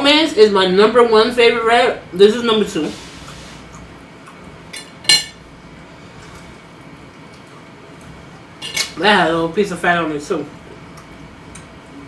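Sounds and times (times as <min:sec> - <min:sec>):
cutlery clinking against plate: 0:04.8 - 0:05.4, 0:08.6 - 0:09.0.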